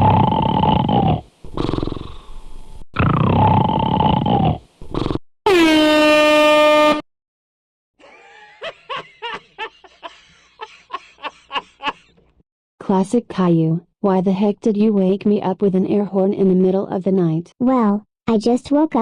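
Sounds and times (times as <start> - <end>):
person snoring: 0.0 - 5.2
air horn blast: 5.5 - 7.1.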